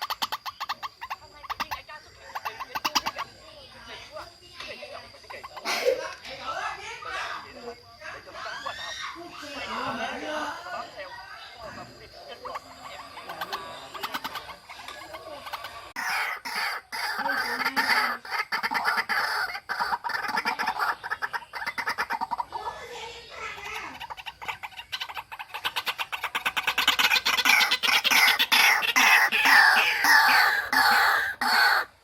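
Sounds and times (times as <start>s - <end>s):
waterhen harsh calls: 12.5s - 32.0s.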